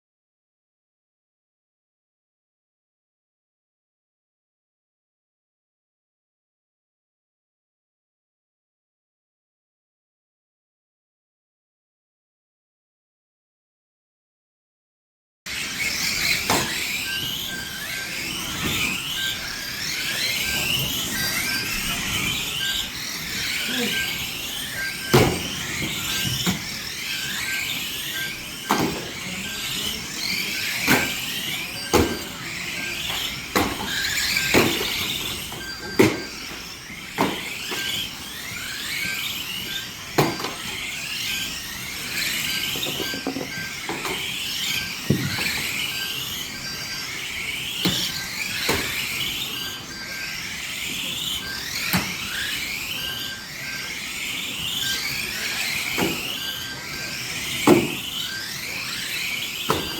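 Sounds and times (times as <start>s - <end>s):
model car motors whining: 15.5s - 59.9s.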